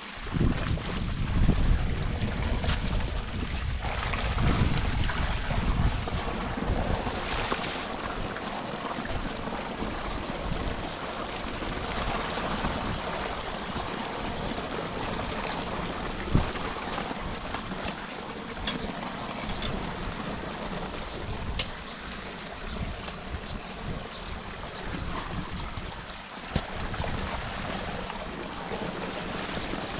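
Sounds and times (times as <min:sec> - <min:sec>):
wind buffeting microphone: 0:00.0 - 0:17.9, 0:18.5 - 0:29.9
rain and rushing storm water: 0:00.0 - 0:29.9.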